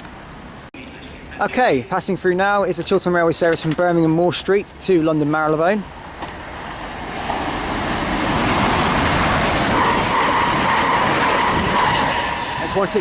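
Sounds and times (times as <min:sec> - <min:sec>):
diesel train passing: 0:05.2 - 0:13.0
thin high whine: 0:07.5 - 0:13.0.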